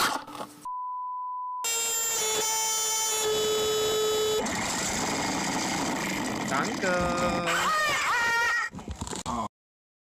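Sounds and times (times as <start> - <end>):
electronic buzzing tone: 1.6 - 4.9.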